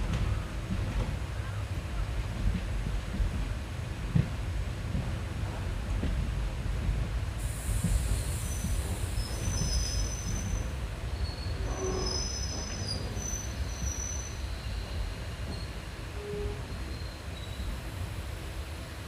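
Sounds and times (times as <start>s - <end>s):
train wheels rumbling on rail: 0.0s - 19.0s
high-pitched wheel squeals: 9.2s - 14.9s.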